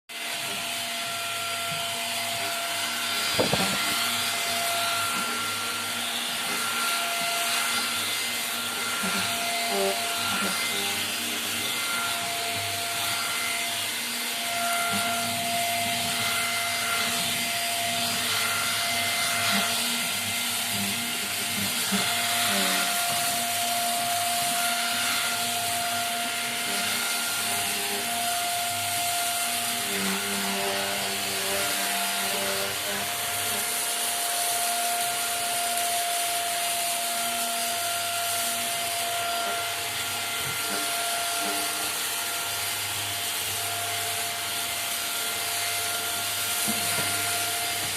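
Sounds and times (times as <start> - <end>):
stick vacuum running: 0.1 - 47.9
sharp knock: 3.4 - 4.0.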